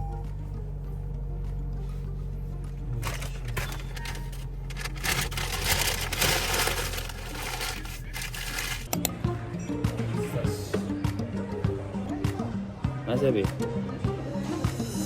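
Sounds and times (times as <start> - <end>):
car engine and road hum: 0.1 - 8.9.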